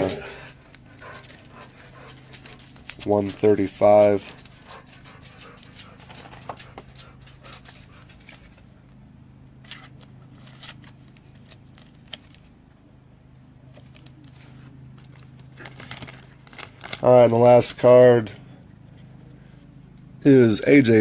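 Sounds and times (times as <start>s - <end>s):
trading cards clicking and rustling: 0.0s - 12.7s, 13.6s - 17.7s
steady low hum: 0.0s - 21.0s.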